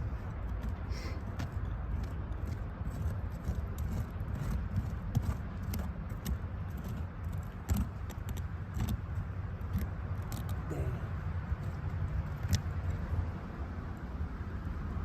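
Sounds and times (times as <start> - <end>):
tool scraping and clicking: 1.4 - 9.0.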